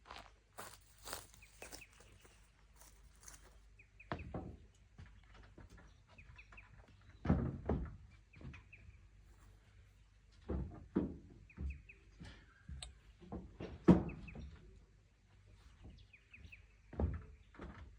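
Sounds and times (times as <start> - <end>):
small birds chirping: 0.6 - 7.3, 14.1 - 17.6.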